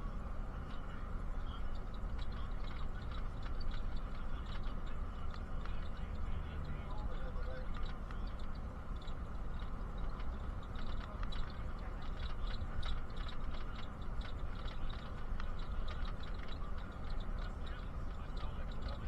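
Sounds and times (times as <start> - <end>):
bus engine and road rumble: 0.0 - 19.0
cabin rattles and ticks: 1.7 - 19.0.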